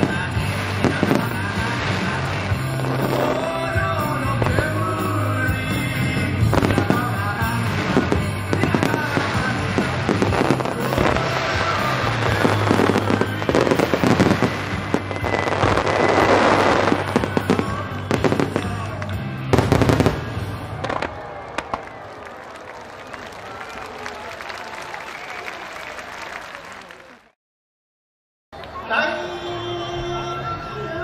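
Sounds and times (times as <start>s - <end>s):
music: 0.0s - 21.2s, 28.8s - 31.0s
fireworks bursting: 0.0s - 22.3s.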